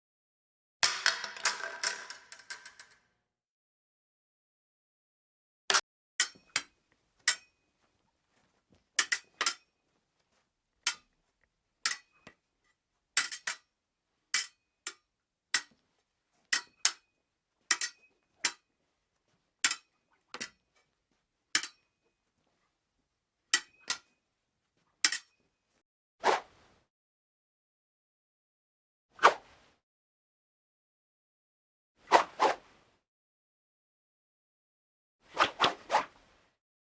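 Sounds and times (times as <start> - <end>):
fencing blades clashing: 0.9 - 3.0, 6.2 - 13.7, 14.3 - 15.9, 16.5 - 17.1, 17.7 - 18.7, 19.6 - 20.9, 21.5 - 22.1, 23.6 - 24.2, 25.0 - 25.5.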